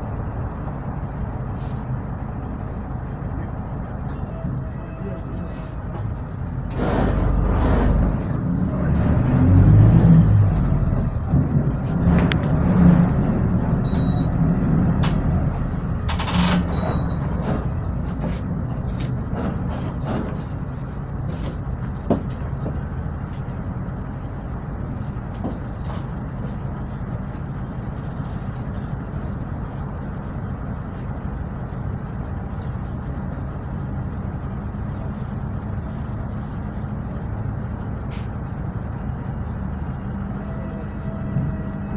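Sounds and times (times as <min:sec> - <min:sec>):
bus engine drone: 0:00.0 - 0:41.9
rattles and clicks: 0:16.0 - 0:23.5.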